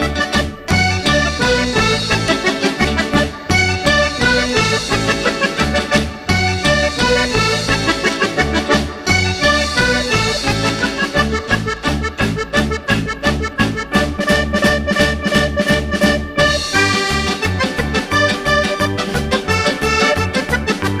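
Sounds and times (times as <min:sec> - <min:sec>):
upbeat background music: 0:00.0 - 0:21.0.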